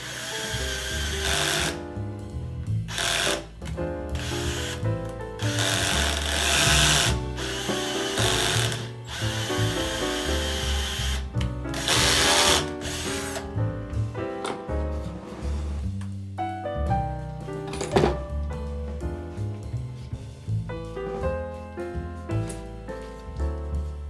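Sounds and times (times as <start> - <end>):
power drill running: 0.0 - 1.8, 2.9 - 3.5, 4.2 - 4.8, 5.5 - 11.2, 11.8 - 13.4
background music: 0.0 - 24.0.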